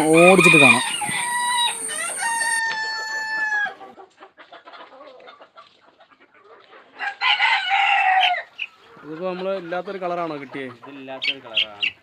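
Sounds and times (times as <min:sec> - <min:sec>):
rooster crowing: 0:00.0 - 0:03.8, 0:07.0 - 0:08.4
chicken clucking: 0:00.0 - 0:07.2, 0:08.5 - 0:12.0.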